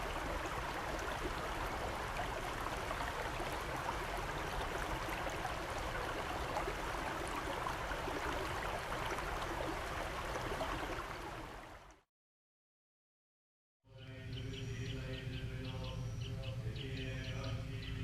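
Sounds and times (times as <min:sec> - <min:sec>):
flowing water: 0:00.0 - 0:12.0.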